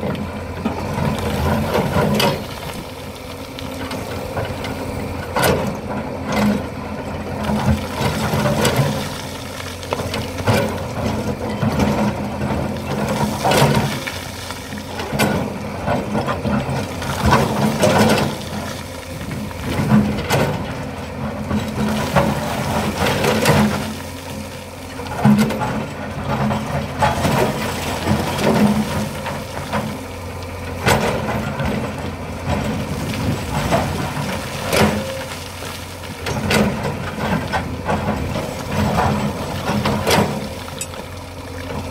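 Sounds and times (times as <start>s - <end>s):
diesel engine under load: 0.0s - 41.9s
machine clanks and knocks: 30.8s - 35.4s, 36.1s - 41.1s.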